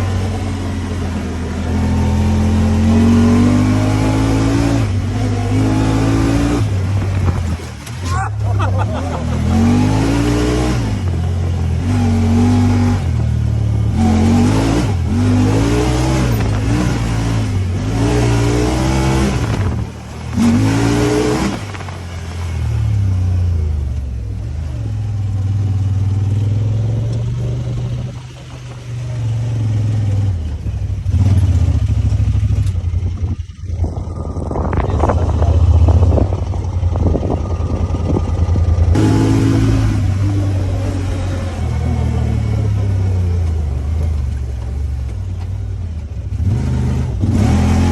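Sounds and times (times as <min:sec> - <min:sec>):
engine revving: 0:00.0 - 0:47.9.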